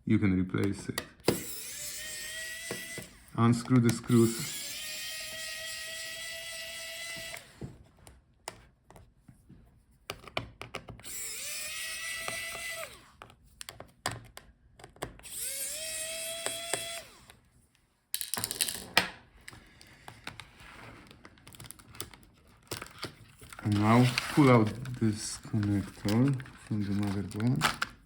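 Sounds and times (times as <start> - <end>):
electric screwdriver whining: 1.2 - 7.7, 11.0 - 13.2, 15.2 - 17.4.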